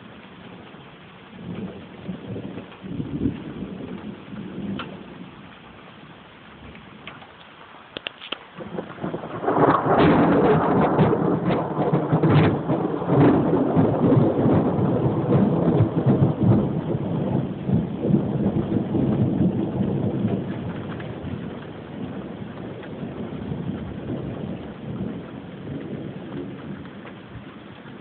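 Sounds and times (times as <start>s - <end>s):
steady rain: 0.0s - 28.0s
thunder rolling: 1.4s - 5.5s, 8.6s - 28.0s
sharp thunder cracks: 8.6s - 27.2s.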